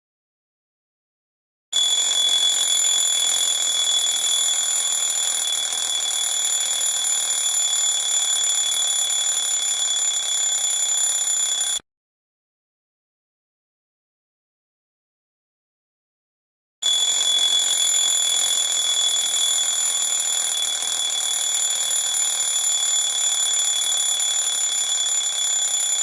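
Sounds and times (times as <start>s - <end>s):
alarm clock ringing: 1.8s - 11.8s, 16.8s - 26.0s.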